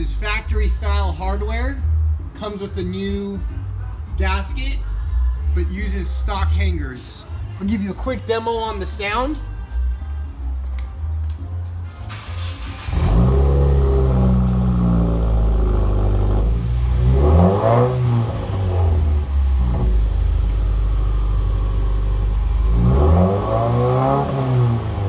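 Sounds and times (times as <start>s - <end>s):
car exhaust idling and revving: 12.8s - 25.0s.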